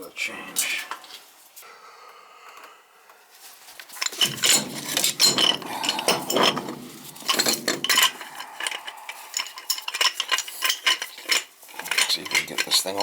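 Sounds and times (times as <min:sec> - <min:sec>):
metal tools clinking and rattling: 0:03.5 - 0:13.0.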